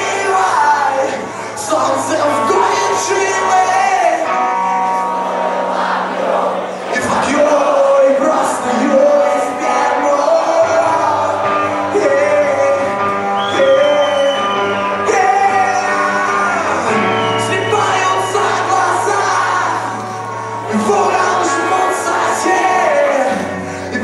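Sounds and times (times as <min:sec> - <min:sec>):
rock band playing: 0:00.0 - 0:24.0
sung and shouted vocals: 0:00.0 - 0:24.0.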